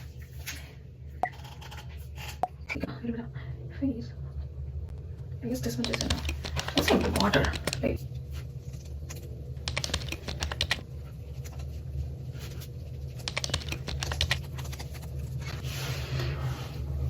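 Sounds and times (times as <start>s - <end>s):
steady low hum: 0.0s - 17.0s
fingertips tapping skin: 13.2s - 15.1s.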